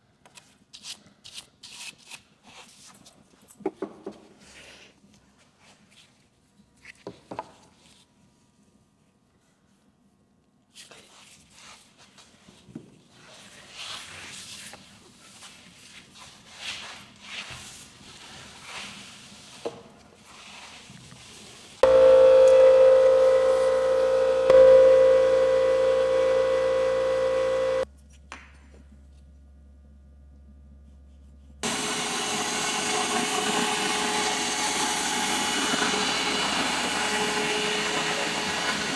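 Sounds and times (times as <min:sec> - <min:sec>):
power tool whining: 0:21.8 - 0:27.8, 0:31.6 - 0:38.9.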